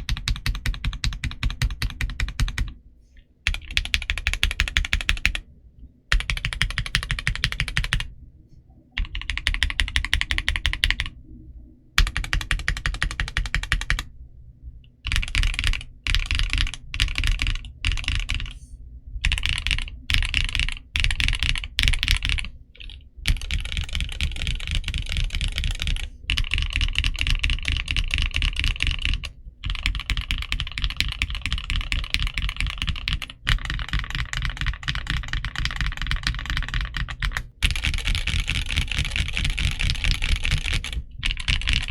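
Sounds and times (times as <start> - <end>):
mechanical keyboard key clacks: 19.3 - 41.9.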